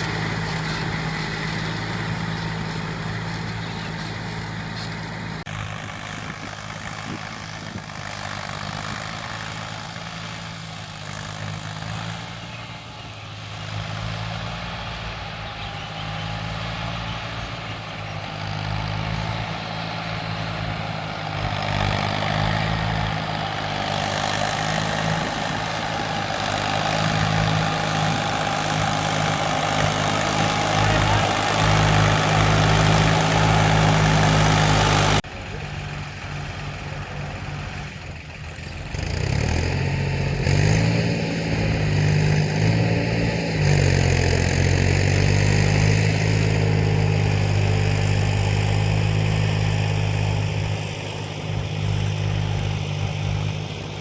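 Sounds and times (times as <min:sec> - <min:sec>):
tractor engine running under load: 0:00.0 - 0:54.0.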